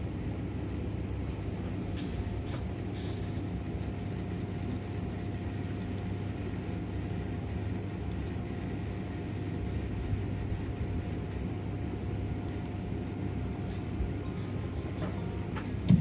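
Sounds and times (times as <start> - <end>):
low background hum: 0.0 - 16.0.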